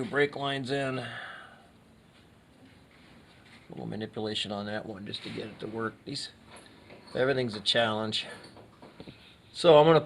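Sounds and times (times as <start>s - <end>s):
man speaking: 0.0s - 1.2s, 3.7s - 6.4s
short breath: 1.1s - 1.7s.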